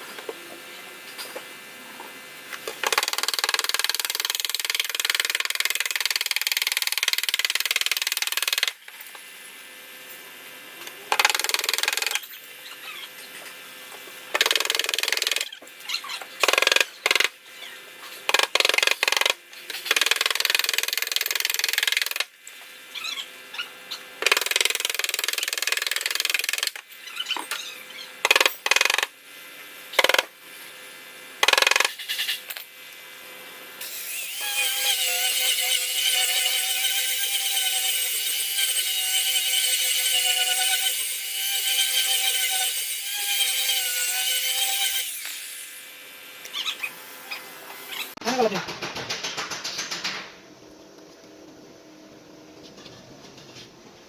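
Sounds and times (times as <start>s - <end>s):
hand-held power tool on car bodywork: 33.8s - 45.9s.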